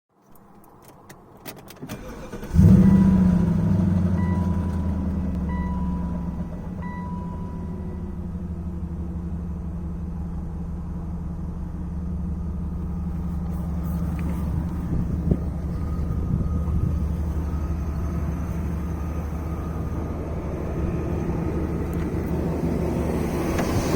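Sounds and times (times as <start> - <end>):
car engine starting and idling: 0.3 - 23.9
short beeps: 4.1 - 8.0.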